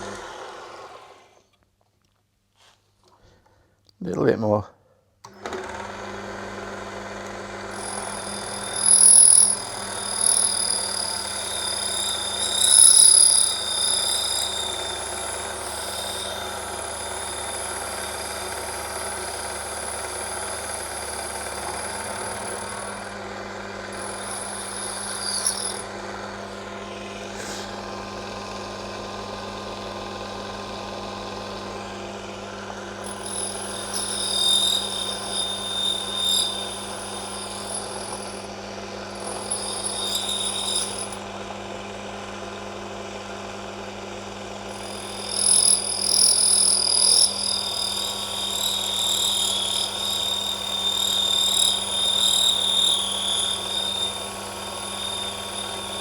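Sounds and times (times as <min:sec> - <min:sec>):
lathe motor hum: 0:00.0 - 0:01.4, 0:05.3 - 0:56.0
high-pitched whine: 0:07.8 - 0:23.1, 0:23.9 - 0:25.9, 0:33.0 - 0:38.5, 0:39.1 - 0:41.2, 0:44.8 - 0:56.0.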